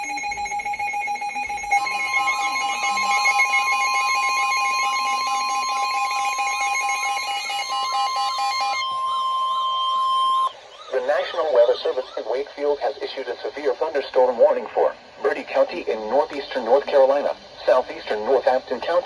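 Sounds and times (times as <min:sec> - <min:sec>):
higher steady tone: 0:00.0 - 0:10.6
steady electronic alarm tone: 0:00.0 - 0:11.7.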